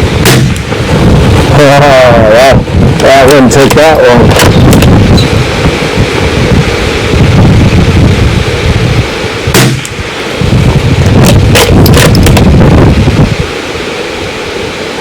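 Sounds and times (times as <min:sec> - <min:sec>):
wind buffeting microphone: 0:00.0 - 0:15.0
rifle shot: 0:00.2 - 0:00.8, 0:09.5 - 0:10.0, 0:11.4 - 0:12.3.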